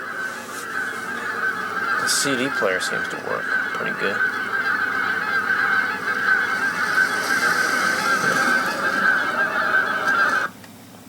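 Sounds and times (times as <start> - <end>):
recorded birdsong from speakers: 0.0 - 10.6.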